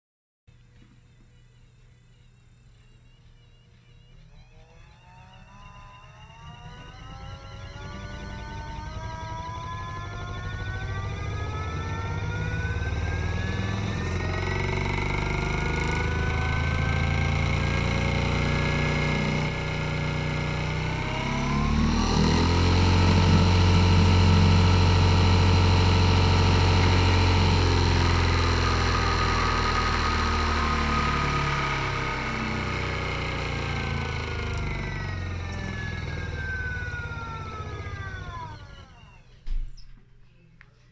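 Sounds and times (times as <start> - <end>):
small motor whine: 0.5 - 40.2.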